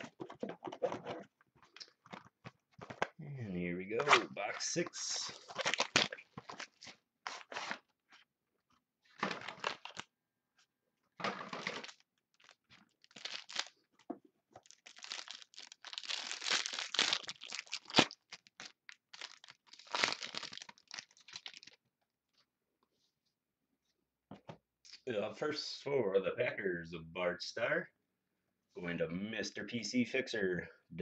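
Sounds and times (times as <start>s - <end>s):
wrapping tearing and crinkling: 4.6s - 7.9s, 9.4s - 10.1s, 11.6s - 13.9s, 14.6s - 21.8s.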